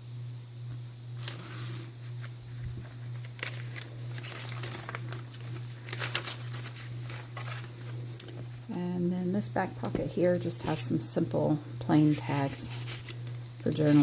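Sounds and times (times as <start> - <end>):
steady low hum: 0.0 - 14.0
paper pages rustling: 1.2 - 8.6, 12.0 - 14.0.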